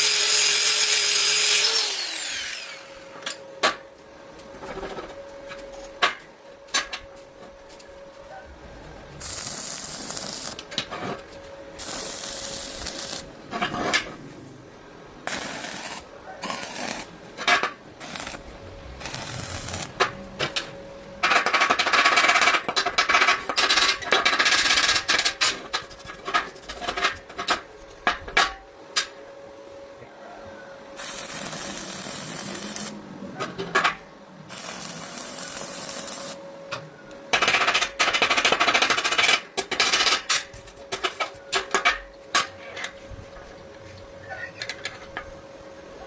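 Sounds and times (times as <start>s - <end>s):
steady hissing scrape: 9.2s - 14.6s, 15.2s - 17.2s, 18.0s - 20.4s.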